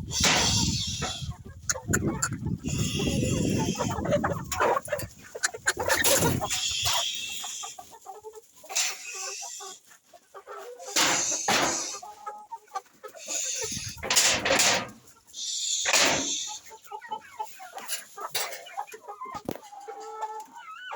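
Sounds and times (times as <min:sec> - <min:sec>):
chickens clucking: 0:00.0 - 0:20.9.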